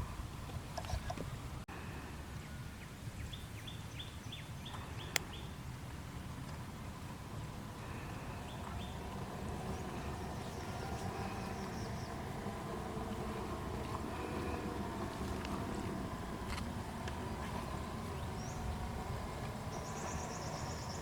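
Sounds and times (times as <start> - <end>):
bird chirping: 2.4 - 5.7, 7.8 - 21.0
low background rumble: 5.0 - 21.0.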